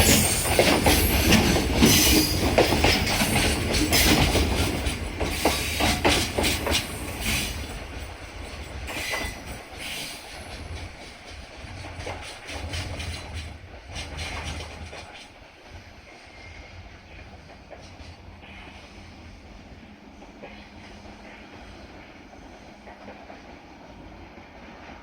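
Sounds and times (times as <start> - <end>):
train wheels clacking over rail joints: 0.0 - 16.7
train low rumble: 0.0 - 25.0.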